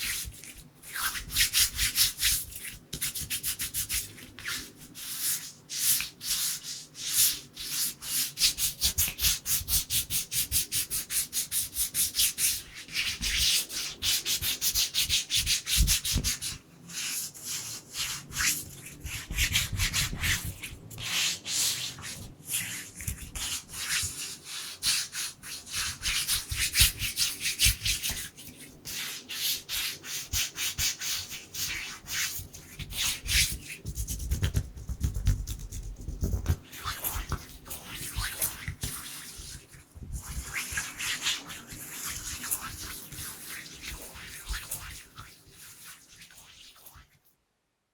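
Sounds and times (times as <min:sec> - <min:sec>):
hands rubbing together: 0:13.1 - 0:46.8.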